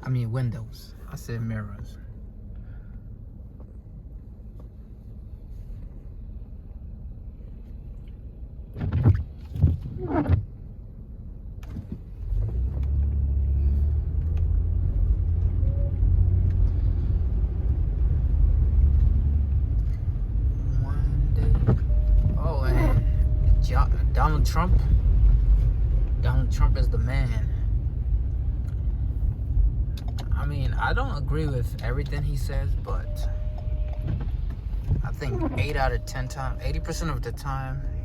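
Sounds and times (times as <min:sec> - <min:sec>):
vehicle engine rumbling: 0:00.0 - 0:38.0.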